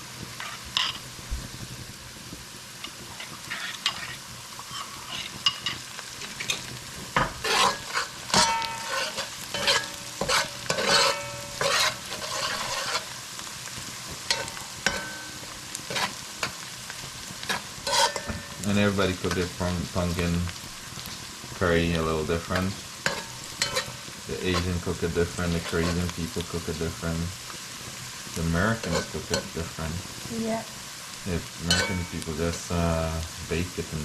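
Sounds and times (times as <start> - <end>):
onions sizzling: 0.0 - 34.0
spoon scraping a pot: 0.4 - 1.1, 3.1 - 13.2, 15.9 - 16.6, 17.4 - 19.5, 22.6 - 24.8, 25.4 - 26.1, 28.8 - 29.6, 31.6 - 32.2.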